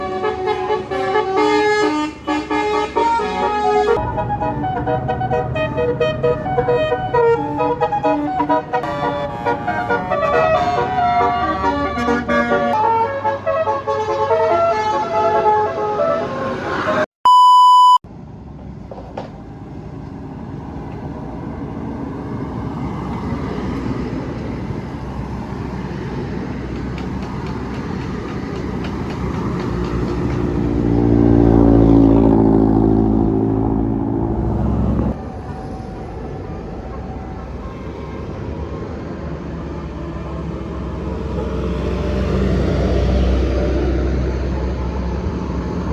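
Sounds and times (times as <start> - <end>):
multi-tone bus horn melody: 0.0 - 17.1
road rumble: 0.0 - 17.1, 17.7 - 45.9
vehicle engine drone: 2.6 - 13.0, 18.1 - 45.9
short electronic beep: 17.2 - 18.0.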